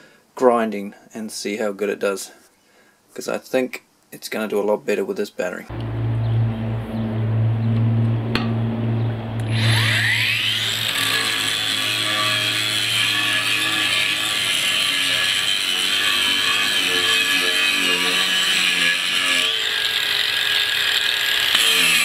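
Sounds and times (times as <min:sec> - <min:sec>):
low hum: 0:05.7 - 0:12.0
angle grinder grinding: 0:05.7 - 0:22.0.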